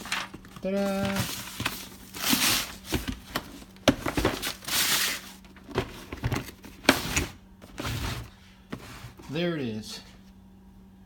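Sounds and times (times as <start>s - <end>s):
packaging crinkling: 0.0s - 6.6s.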